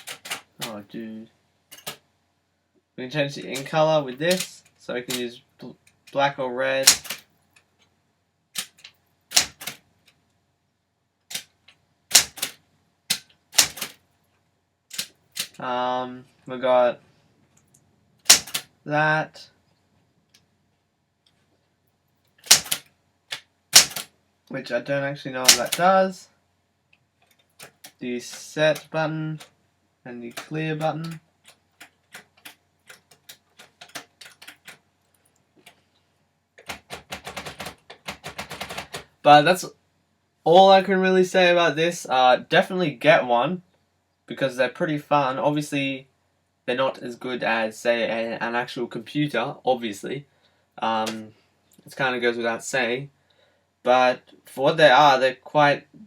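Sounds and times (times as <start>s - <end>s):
typewriter clacking: 0.0s - 0.8s, 1.7s - 2.0s, 4.3s - 4.6s, 6.8s - 7.2s, 8.6s - 9.8s, 12.1s - 14.0s, 14.9s - 15.6s, 18.2s - 18.7s, 22.4s - 24.1s, 25.4s - 25.9s, 31.8s - 34.8s, 36.6s - 39.1s.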